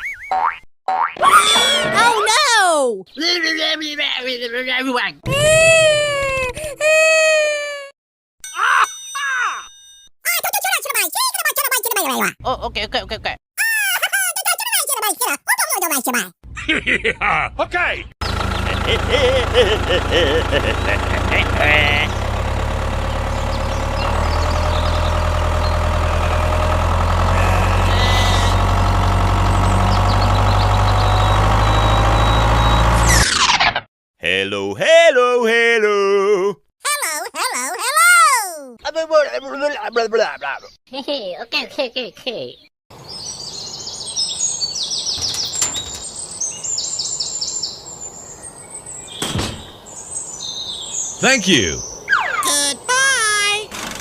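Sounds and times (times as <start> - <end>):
tractor engine running under load: 18.2 - 33.0
bird chirping: 23.1 - 25.8, 42.4 - 53.4.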